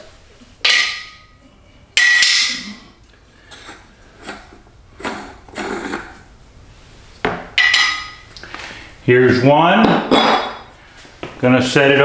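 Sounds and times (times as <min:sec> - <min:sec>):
loud metal clanks: 0:00.6 - 0:01.4, 0:02.0 - 0:02.9, 0:07.6 - 0:08.3.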